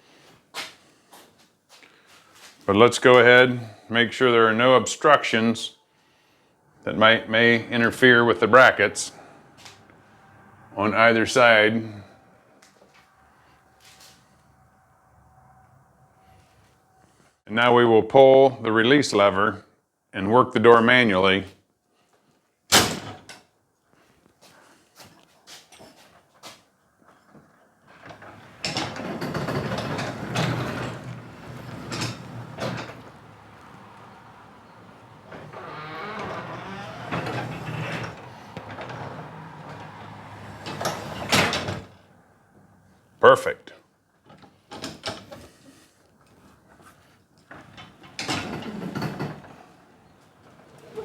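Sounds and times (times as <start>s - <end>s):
garage door rollers rumbling: 27.9s - 42.0s, 47.5s - 51.0s
garage door knocks and rattles: 28.2s - 34.0s.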